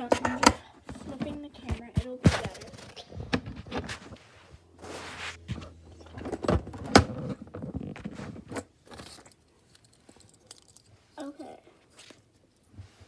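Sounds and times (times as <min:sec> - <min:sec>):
phone handling knocks and bumps: 0:00.0 - 0:03.9, 0:05.5 - 0:08.6
short rustle: 0:03.9 - 0:05.7.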